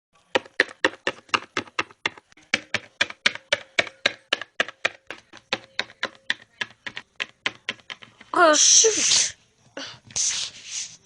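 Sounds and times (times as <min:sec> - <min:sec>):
rapid sharp taps: 0:00.3 - 0:08.4.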